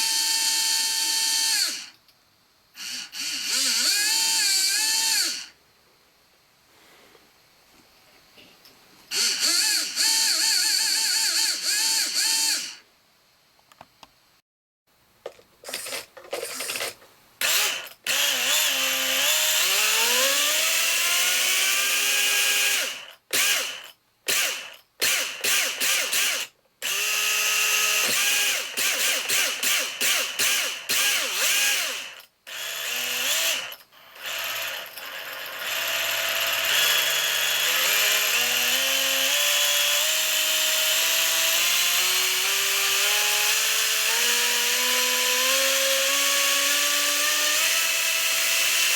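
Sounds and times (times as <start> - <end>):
rc car motor whirring: 2.8 - 5.5.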